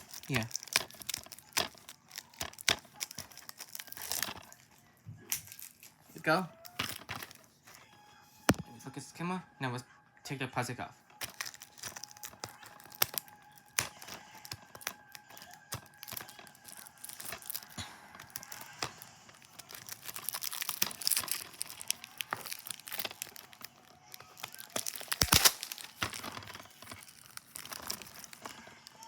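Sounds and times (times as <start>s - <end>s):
plastic wrap sharp tear: 0.0s - 4.6s, 11.2s - 29.0s
plastic wrap crinkling: 0.0s - 7.9s, 11.2s - 29.0s.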